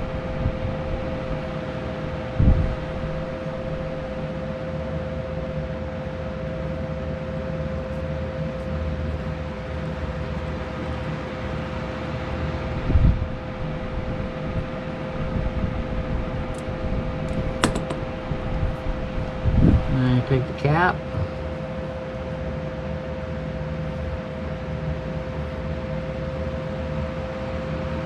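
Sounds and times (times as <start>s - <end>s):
machine hum: 0.0s - 28.0s
sharp click: 17.3s - 18.1s
dull thump: 17.6s - 18.1s.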